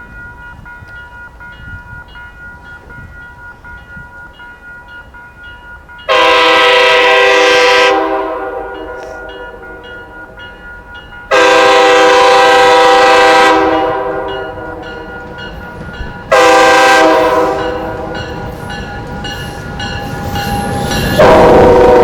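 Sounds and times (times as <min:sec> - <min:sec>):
crossing bell ringing: 0:00.0 - 0:22.0
locomotive horn blasts: 0:06.1 - 0:10.1, 0:11.3 - 0:15.2, 0:16.3 - 0:18.3, 0:21.1 - 0:22.0.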